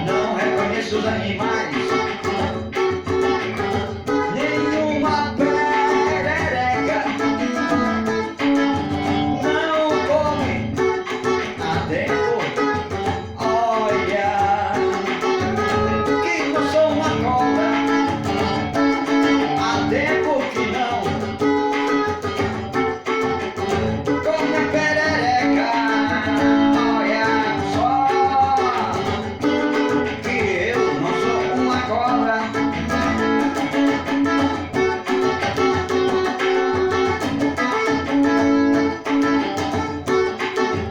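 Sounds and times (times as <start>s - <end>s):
guitar song with singing: 0.0s - 40.9s.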